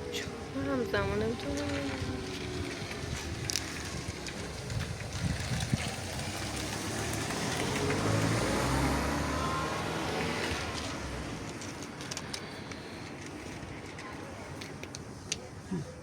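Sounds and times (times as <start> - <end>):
car passing by: 1.3 - 12.7.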